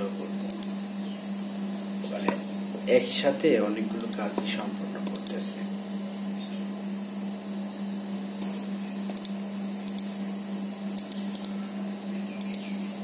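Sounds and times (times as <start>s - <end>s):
steady low hum: 0.0s - 13.0s
computer keyboard keys clicking: 11.0s - 11.6s.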